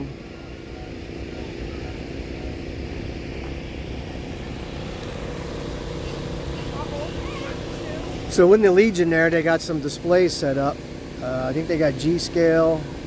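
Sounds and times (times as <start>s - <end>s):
engine droning: 0.0s - 13.0s.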